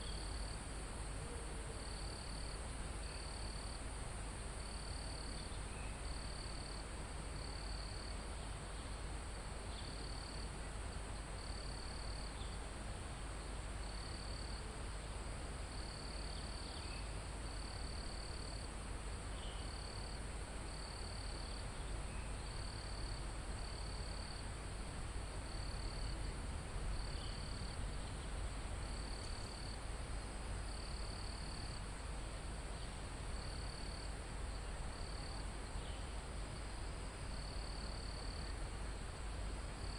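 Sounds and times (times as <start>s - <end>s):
cricket trilling: 26.9s - 29.8s.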